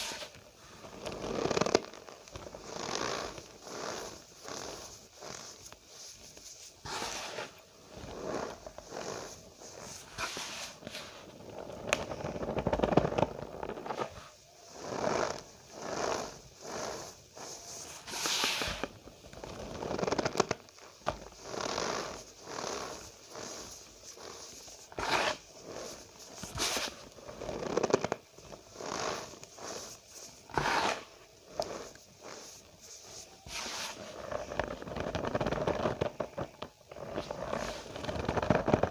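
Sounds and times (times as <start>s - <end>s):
cornstarch squeaky crunchy scrunch: 21.2s - 38.9s.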